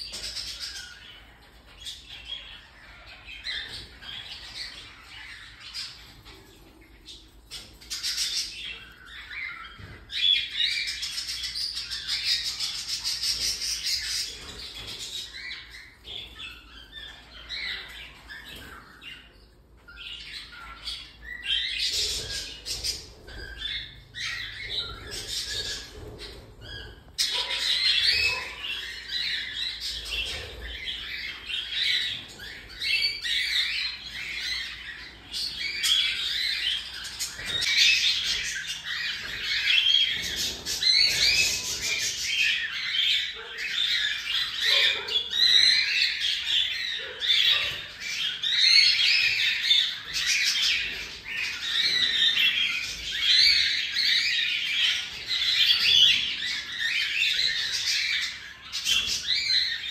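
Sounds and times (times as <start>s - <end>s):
cockatiels chirping and squawking: 0.0s - 59.9s.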